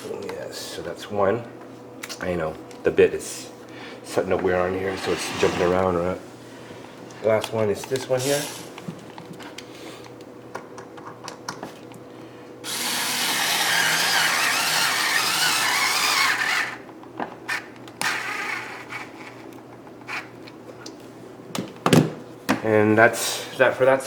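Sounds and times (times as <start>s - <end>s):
power drill driving screw: 12.7s - 16.8s.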